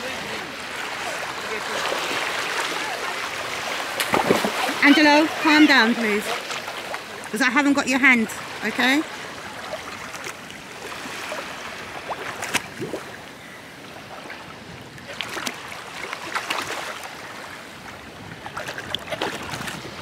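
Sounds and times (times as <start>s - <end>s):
water splashing: 0.0s - 13.2s, 14.0s - 20.0s
sea water washing onto beach: 0.0s - 20.0s.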